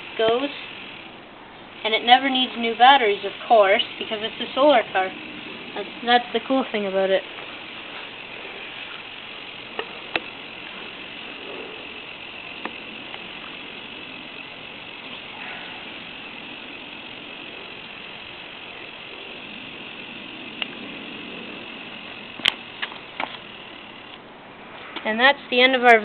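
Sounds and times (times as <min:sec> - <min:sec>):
small electric motor whirring: 0:00.0 - 0:26.0
sharp clicks: 0:09.7 - 0:10.4, 0:20.6 - 0:20.8, 0:22.4 - 0:24.2.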